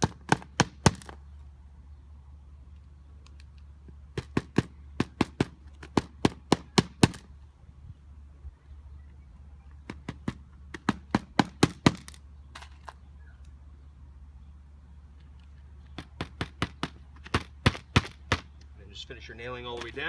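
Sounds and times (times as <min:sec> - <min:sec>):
hammer driving nails into shingle: 0:00.0 - 0:01.1, 0:10.0 - 0:12.2, 0:16.0 - 0:18.5.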